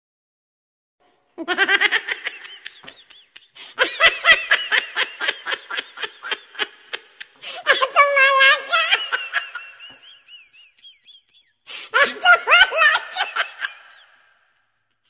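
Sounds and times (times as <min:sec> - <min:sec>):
laughter in rapid bursts: 0:01.4 - 0:14.3.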